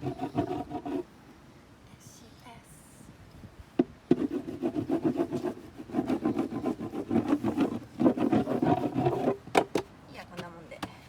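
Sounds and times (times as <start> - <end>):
rapid rubbing strokes: 4.1 - 9.4.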